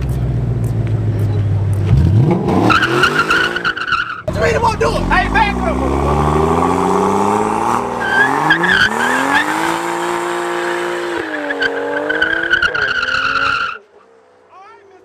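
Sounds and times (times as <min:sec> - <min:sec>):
tyres squealing: 0:00.0 - 0:10.1
car engine revving: 0:00.0 - 0:14.5.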